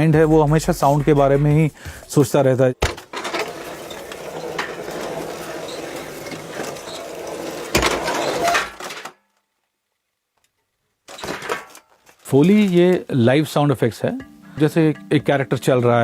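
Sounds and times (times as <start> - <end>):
crockery clinking and clattering: 3.1 - 9.0.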